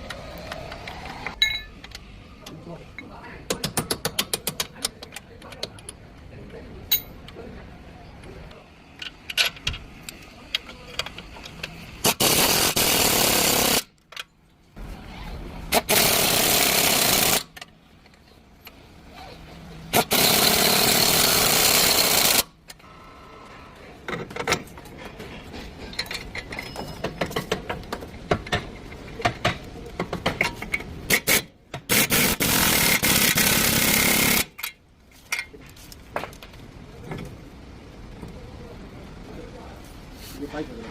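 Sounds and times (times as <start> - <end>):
air impact wrench running: 12.0 - 13.9, 15.7 - 17.5, 19.9 - 22.5, 31.1 - 34.6
clicks and metal knocks: 24.1 - 31.0.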